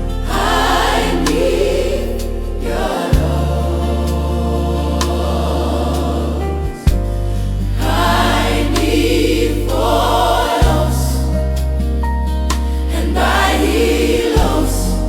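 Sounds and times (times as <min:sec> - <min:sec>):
gospel choir singing: 0:00.0 - 0:12.0, 0:12.6 - 0:15.0
low bass chords: 0:00.0 - 0:15.0.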